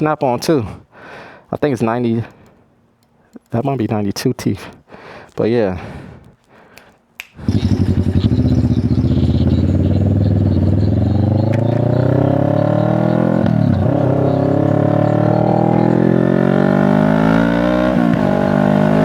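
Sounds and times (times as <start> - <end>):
motorcycle engine accelerating: 7.4 - 19.0.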